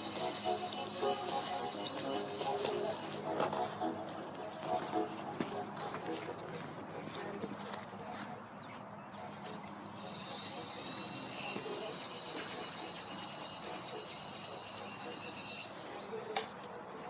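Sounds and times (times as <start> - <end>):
toy helicopter rotor whine: 0.0 - 3.9, 9.8 - 16.6.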